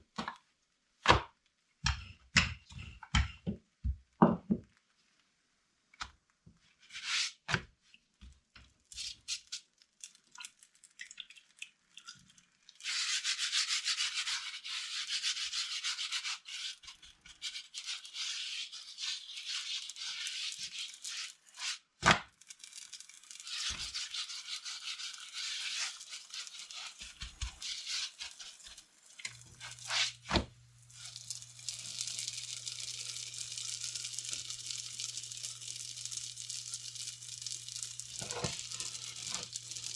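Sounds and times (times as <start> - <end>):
flatbread hissing on hot griddle: 12.9 - 21.8, 22.5 - 39.9
rubbing and scraping: 23.4 - 32.1.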